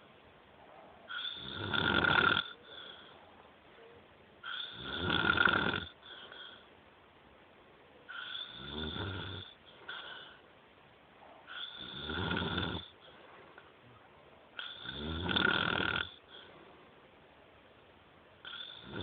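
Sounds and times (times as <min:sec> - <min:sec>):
loud rasping snores: 0:01.1 - 0:02.6, 0:04.4 - 0:06.0, 0:08.1 - 0:10.2, 0:11.5 - 0:13.0, 0:14.6 - 0:16.2, 0:18.4 - 0:19.0.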